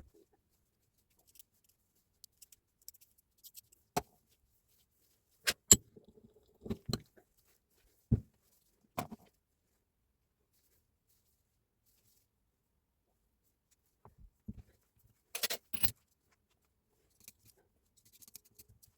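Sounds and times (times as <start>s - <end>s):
tools clicking and knocking: 15.4s - 15.9s.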